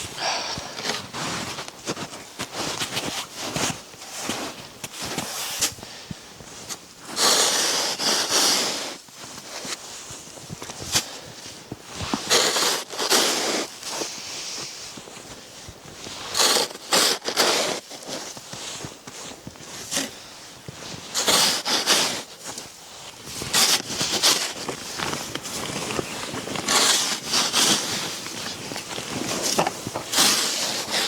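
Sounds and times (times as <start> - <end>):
rustling handling noises: 22.1 - 31.0.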